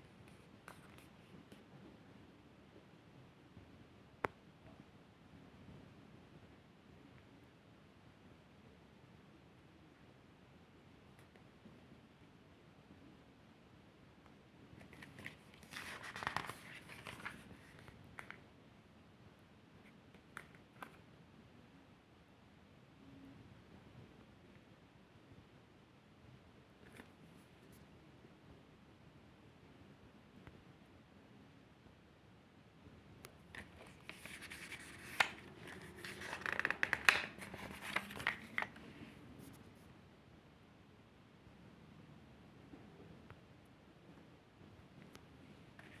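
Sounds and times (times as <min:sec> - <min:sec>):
packaging scraping and rustling: 0:14.9 - 0:17.5, 0:33.6 - 0:38.9.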